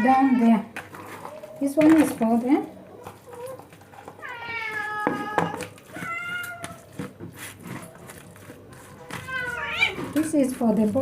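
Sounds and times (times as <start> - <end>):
cat meowing: 3.2 - 7.0, 9.1 - 10.2.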